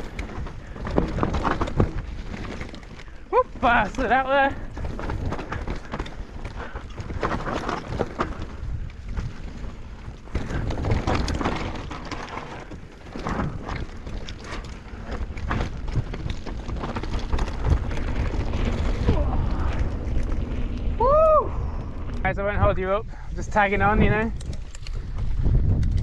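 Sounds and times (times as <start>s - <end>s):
bike rattling knocks: 0.0s - 20.7s
tyres on dirt: 0.0s - 26.0s
wind buffeting microphone: 0.0s - 26.0s.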